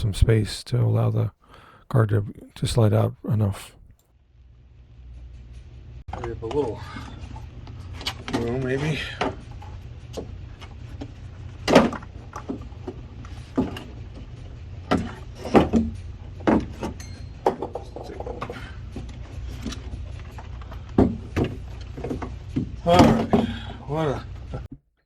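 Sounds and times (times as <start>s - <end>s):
steady low hum: 0.0s - 4.0s.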